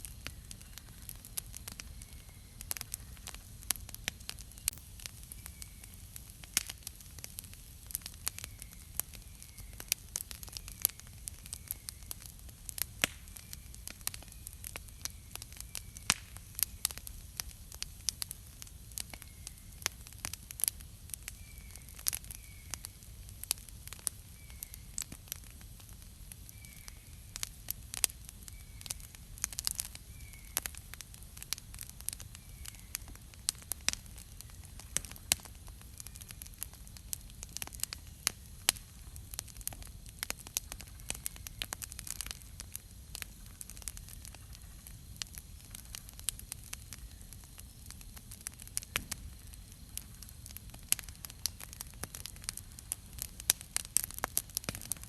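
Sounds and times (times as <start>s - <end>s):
faint bird chirp: 0.0s - 3.4s, 4.2s - 6.2s, 8.1s - 12.3s, 19.0s - 20.0s, 21.2s - 23.0s, 24.2s - 25.1s, 26.4s - 27.4s, 28.4s - 30.8s, 32.1s - 33.2s
campfire crackling and popping: 0.0s - 55.0s.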